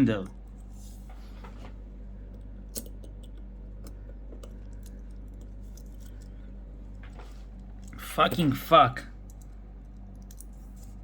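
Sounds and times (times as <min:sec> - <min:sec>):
low electrical hum: 0:00.0 - 0:11.0.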